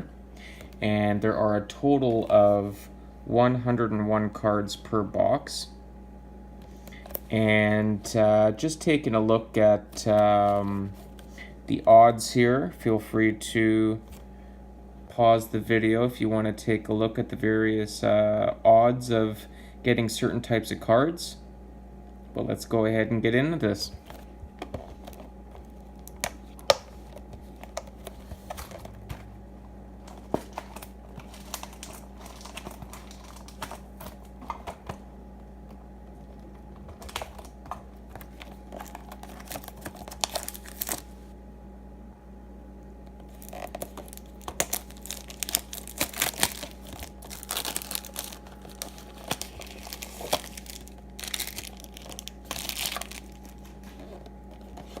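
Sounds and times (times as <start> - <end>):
plastic wrap crinkling and tearing: 30.0 - 34.9, 37.0 - 41.2, 43.2 - 55.0.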